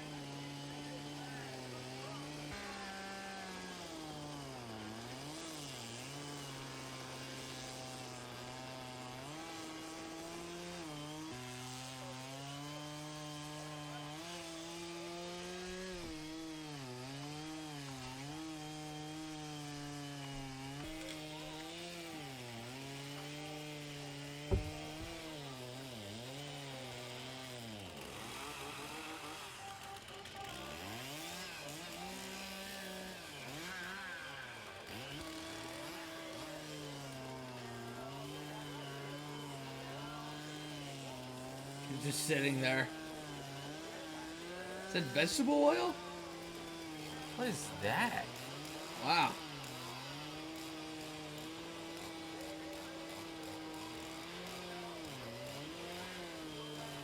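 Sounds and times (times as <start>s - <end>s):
chainsaws revving and cutting wood: 0.0s - 57.0s
sharp knock: 24.5s - 25.2s.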